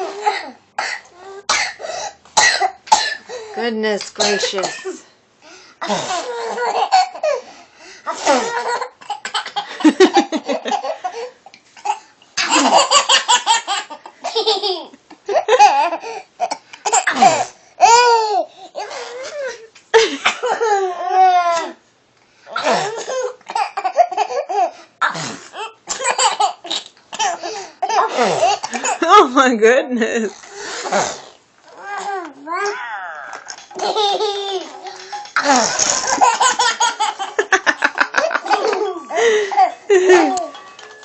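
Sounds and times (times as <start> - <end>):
baby laughing and squealing: 31.7 - 37.4.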